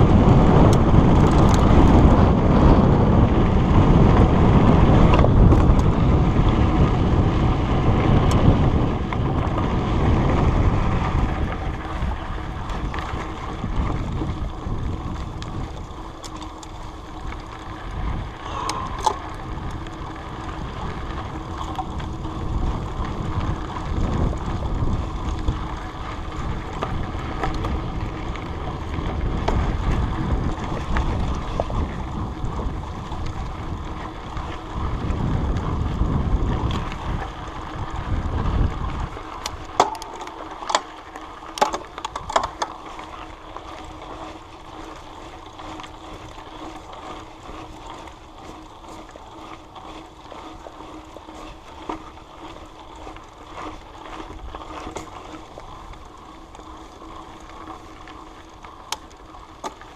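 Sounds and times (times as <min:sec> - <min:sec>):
bike trail rumble and rattle: 0:00.0 - 0:59.9
wind buffeting microphone: 0:00.0 - 0:59.9
sharp clicks and knocks: 0:39.4 - 0:40.9.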